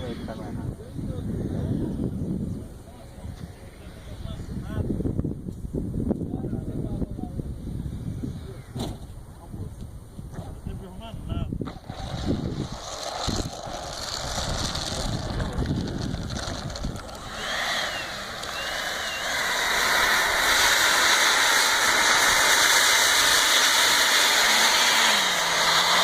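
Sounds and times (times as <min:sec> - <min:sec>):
ducted fan jet-like hiss: 0:00.0 - 0:11.2, 0:11.8 - 0:26.0
low rumbles and thumps: 0:08.7 - 0:17.4.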